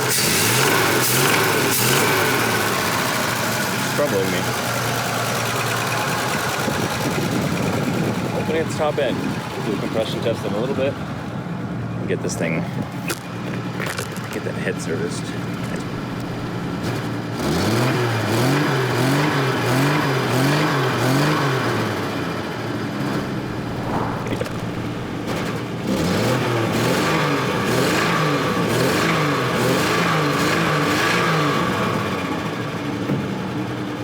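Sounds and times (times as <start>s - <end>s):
car engine revving: 15.6s - 19.8s.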